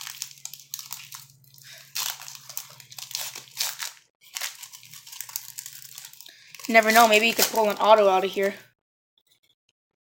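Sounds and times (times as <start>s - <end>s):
wrapper tearing and crinkling: 0.0s - 8.6s.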